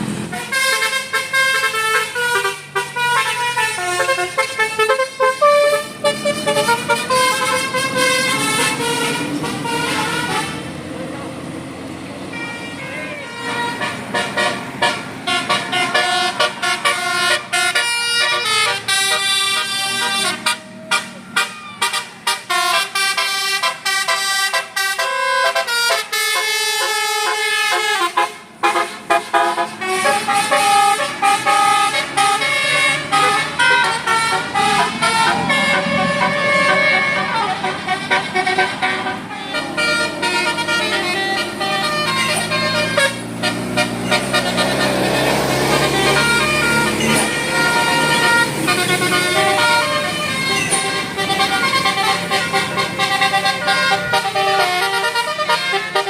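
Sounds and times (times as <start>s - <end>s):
multi-tone musical bus horns: 0.0s - 56.0s
low engine rumble: 27.0s - 56.0s.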